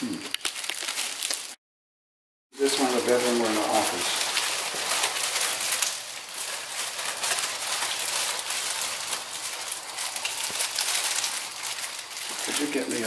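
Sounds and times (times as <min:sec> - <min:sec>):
cardboard box rustling: 0:02.6 - 0:13.0.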